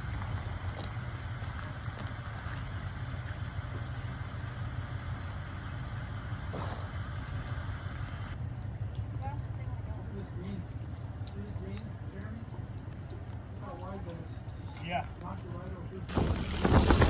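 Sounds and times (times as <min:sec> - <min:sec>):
vehicle low rumble: 0:00.0 - 0:17.0
wind noise: 0:16.1 - 0:17.0.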